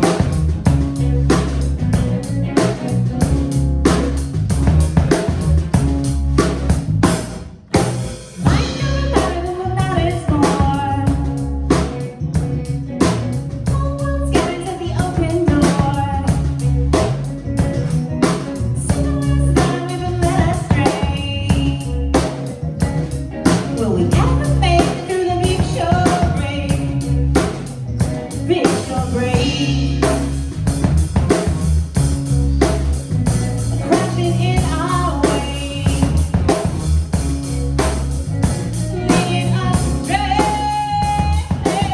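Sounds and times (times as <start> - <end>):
drum kit beat: 0.0 - 41.9
guitar: 0.0 - 41.9
person singing: 8.4 - 11.4, 13.7 - 16.6, 18.7 - 22.2, 23.6 - 27.4, 28.1 - 30.2, 33.7 - 36.3, 38.8 - 41.9.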